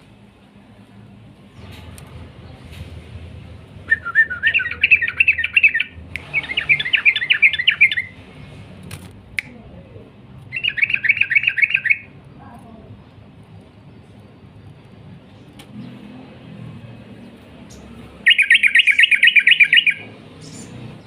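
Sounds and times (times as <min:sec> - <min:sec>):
bird singing chattering notes: 0:04.2 - 0:08.5, 0:10.5 - 0:12.1, 0:17.6 - 0:21.0.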